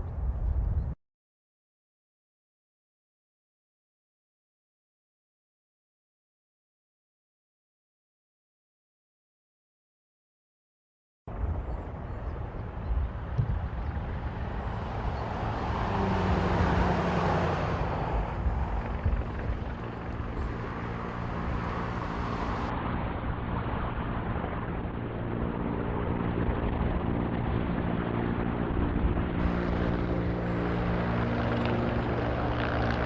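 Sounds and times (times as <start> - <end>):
droning hum: 11.3 - 23.4, 28.6 - 33.0
engine low rumble: 11.3 - 25.4, 28.5 - 33.0.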